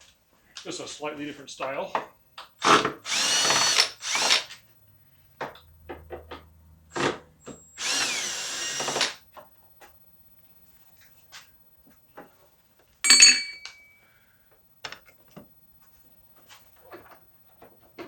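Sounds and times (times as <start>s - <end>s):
cordless drill whining: 2.6s - 4.6s, 6.9s - 9.2s
small clicks and taps of parts: 5.4s - 6.5s, 14.5s - 15.5s.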